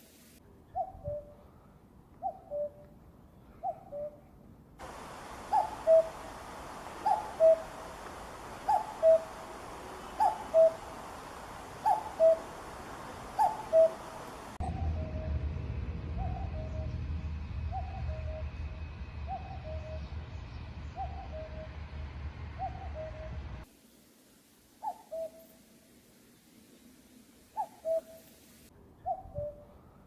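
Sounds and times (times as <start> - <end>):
background hiss: 0.0 - 0.4, 4.8 - 14.6, 23.2 - 28.7
cuckoo calling: 4.8 - 14.8, 24.8 - 25.6, 27.5 - 28.3.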